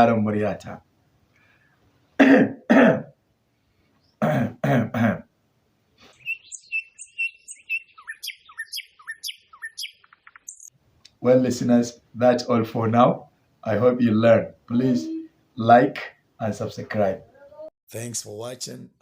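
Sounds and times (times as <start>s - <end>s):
person coughing: 2.2s - 3.1s, 4.2s - 5.3s
birds chirping: 3.6s - 4.3s, 6.0s - 10.7s.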